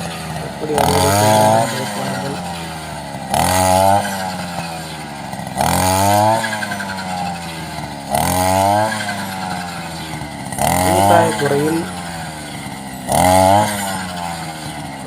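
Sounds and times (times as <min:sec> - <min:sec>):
brush cutter engine revving: 0:00.1 - 0:02.7.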